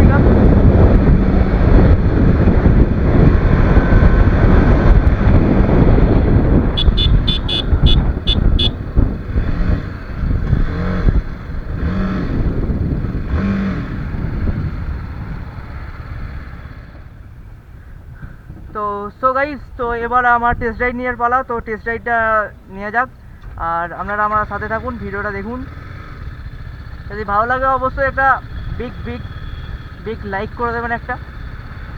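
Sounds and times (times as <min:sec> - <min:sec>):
motorcycle riding at speed: 0:00.0 - 0:18.8, 0:19.8 - 0:31.9
wind rush on microphone: 0:00.0 - 0:22.6
short high beeps: 0:06.8 - 0:08.7
brief horn-like tones: 0:06.8 - 0:08.8.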